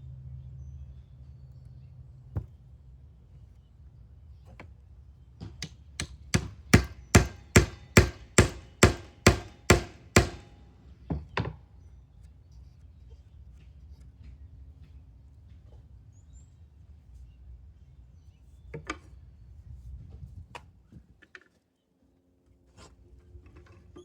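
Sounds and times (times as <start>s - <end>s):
hammering on wood: 5.4s - 11.6s.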